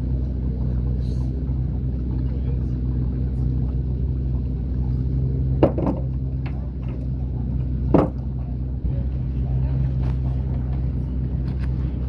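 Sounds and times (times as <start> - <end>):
engine humming: 0.0 - 12.0
sharp knocks: 5.6 - 6.2, 7.9 - 8.3.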